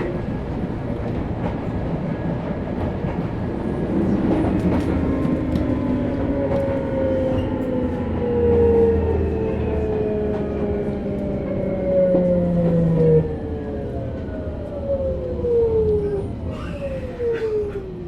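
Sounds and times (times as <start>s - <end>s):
train running gear rumble: 0.0s - 18.0s.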